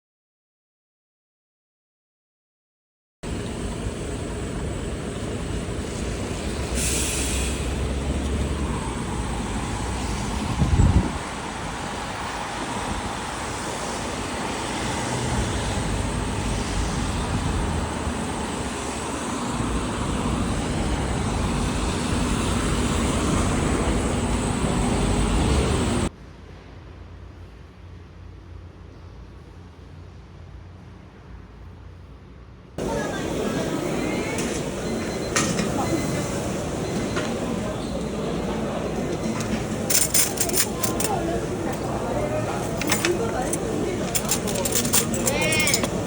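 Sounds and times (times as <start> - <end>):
road traffic noise: 3.2 - 26.8, 32.3 - 46.0.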